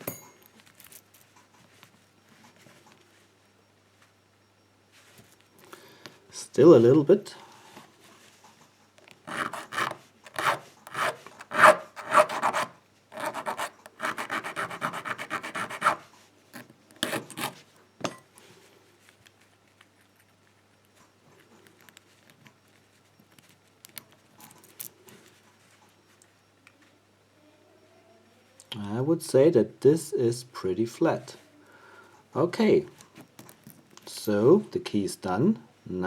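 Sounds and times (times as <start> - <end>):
file rasping on metal: 9.3 - 16.0, 17.0 - 17.6.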